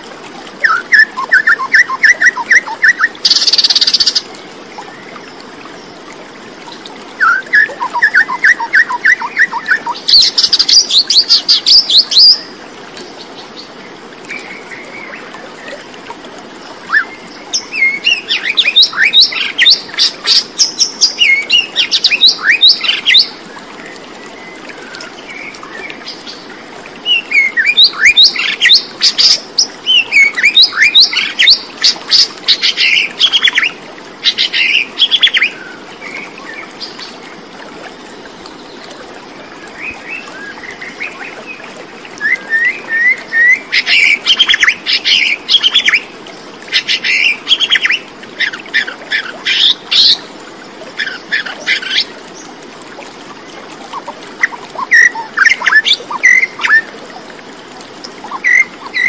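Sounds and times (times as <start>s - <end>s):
birds chirping: 58.3s - 59.0s.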